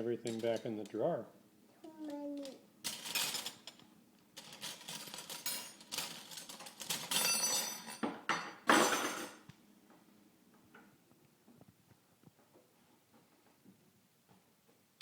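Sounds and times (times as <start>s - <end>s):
spoons clattering together: 4.4s - 8.0s.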